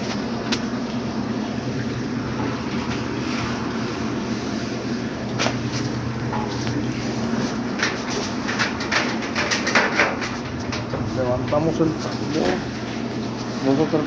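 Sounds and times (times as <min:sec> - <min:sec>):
low mechanical hum: 0:00.0 - 0:14.0
clicks and knocks of handling parts: 0:07.7 - 0:12.6.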